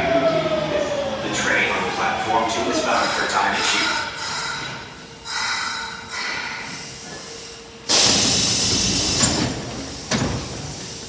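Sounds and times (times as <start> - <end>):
loud hiss of air: 3.0 - 11.0.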